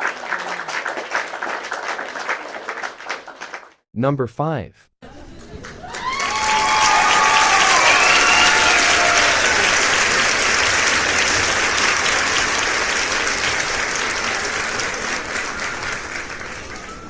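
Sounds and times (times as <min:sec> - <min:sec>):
crowd applauding: 0:00.0 - 0:03.8, 0:05.3 - 0:17.0
crowd cheering: 0:05.2 - 0:17.0.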